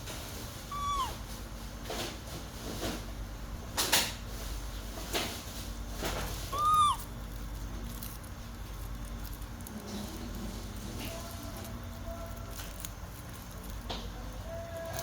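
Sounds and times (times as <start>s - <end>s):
baby monkey squeak: 0.7s - 1.2s, 6.5s - 7.1s.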